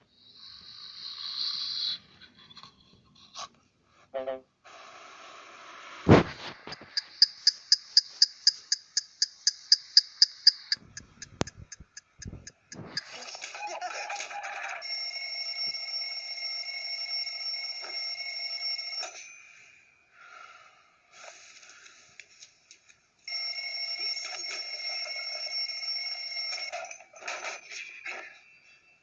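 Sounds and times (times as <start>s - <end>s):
alarm clock ringing: 6.9s - 10.8s, 14.7s - 20.0s, 23.3s - 29.0s.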